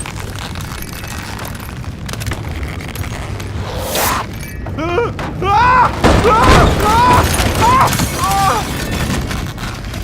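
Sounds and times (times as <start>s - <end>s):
rising whoosh: 3.4s - 4.3s.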